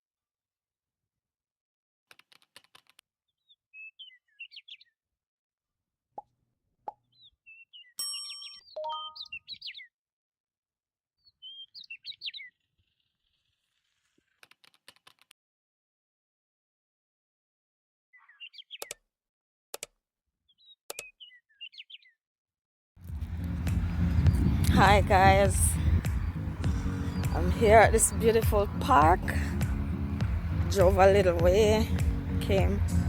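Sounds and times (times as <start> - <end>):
bird chirping: 3.4 - 5.0, 7.0 - 9.9, 11.2 - 13.5, 18.1 - 19.0, 20.5 - 22.2, 23.4 - 33.0
ringing ding: 8.0 - 9.2.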